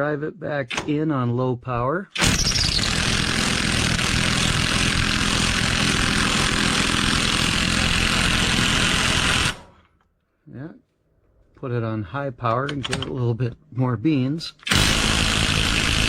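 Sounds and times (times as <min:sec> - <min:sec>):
impact wrench hammering: 0:00.7 - 0:01.0.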